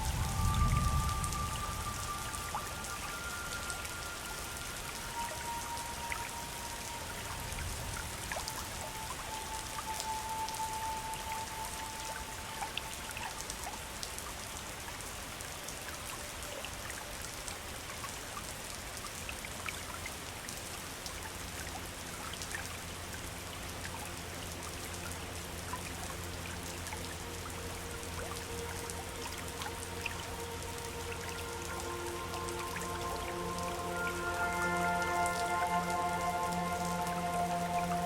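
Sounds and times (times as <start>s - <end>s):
soft held tone: 0.0s - 13.8s, 26.7s - 38.0s
low sustained music chord: 0.0s - 15.5s, 19.9s - 38.0s
river water running and splashing: 0.0s - 38.0s.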